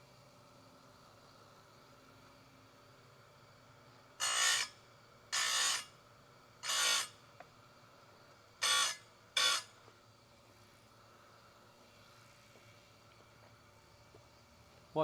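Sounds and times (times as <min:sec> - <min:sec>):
grinding wheel on saw chain: 0:04.2 - 0:05.9, 0:06.6 - 0:07.2, 0:08.6 - 0:09.7.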